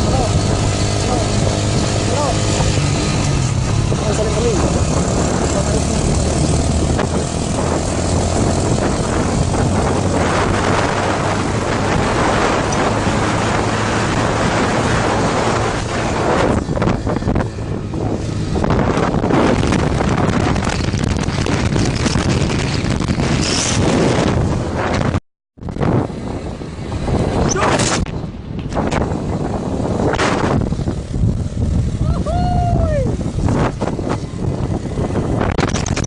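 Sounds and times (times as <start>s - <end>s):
vehicle engine running: 0.0s - 23.4s
wind buffeting microphone: 0.0s - 36.0s.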